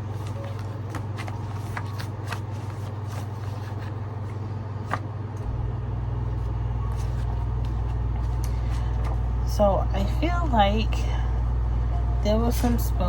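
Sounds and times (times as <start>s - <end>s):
cards being handled: 0.0s - 5.1s, 6.3s - 9.3s
steady low hum: 0.0s - 13.0s.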